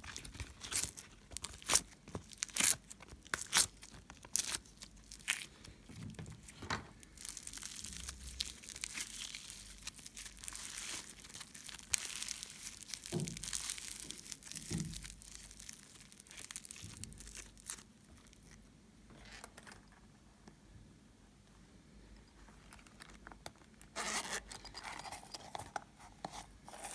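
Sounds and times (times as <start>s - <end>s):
slime crinkling and crackling: 0.0s - 18.7s.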